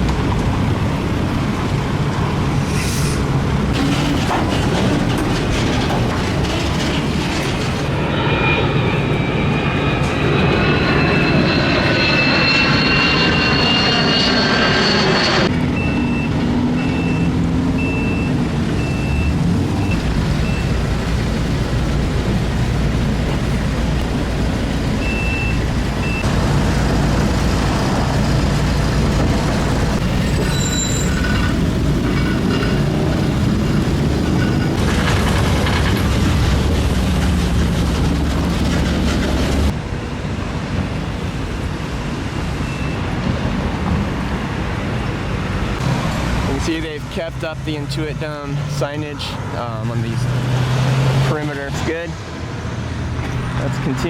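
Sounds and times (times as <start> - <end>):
heavy street traffic: 0.0 - 54.0
reversing alarm beeping: 8.2 - 20.8, 25.0 - 26.3, 42.6 - 43.2
vehicle pulling away whining: 50.0 - 51.7.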